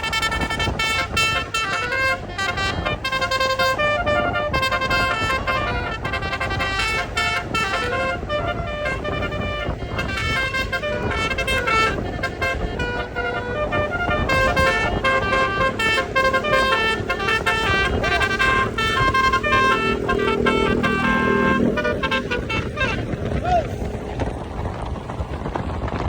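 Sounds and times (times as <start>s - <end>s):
musical air horn tune: 0.0s - 24.0s
steady low rumble: 0.0s - 26.0s.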